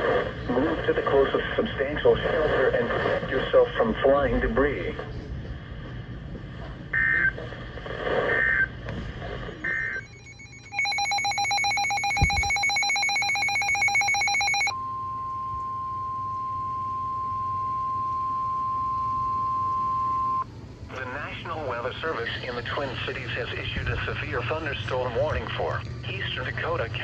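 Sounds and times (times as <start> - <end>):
warbling data bursts: 9.7 - 14.7
pulsing electronic alarm: 9.7 - 20.5
steady alert tone: 10.0 - 14.7.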